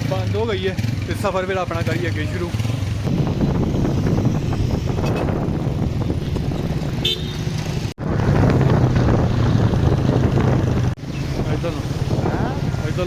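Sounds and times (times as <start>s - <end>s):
vehicle engine and road noise: 0.0s - 13.0s
short horn toot: 7.0s - 7.5s.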